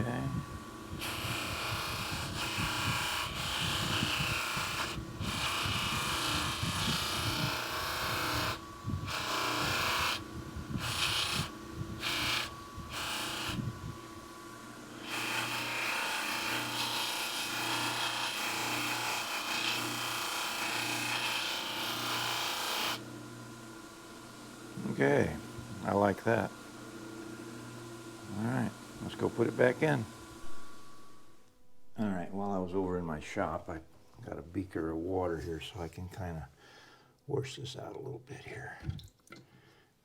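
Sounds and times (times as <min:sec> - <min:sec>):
pulsing low hum: 0:30.3 - 0:34.5.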